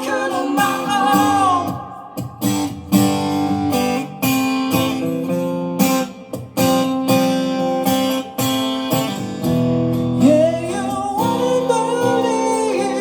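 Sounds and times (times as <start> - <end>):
acoustic guitar strumming chords: 0.0 - 13.0.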